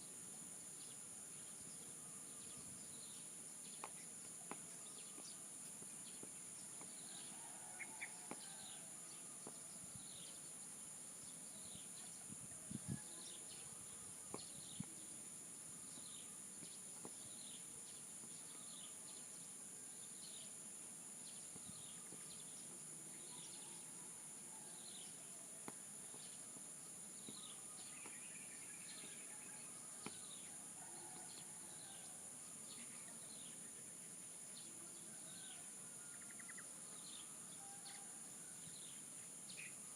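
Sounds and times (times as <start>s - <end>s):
bird chirping: 26.1s - 38.1s.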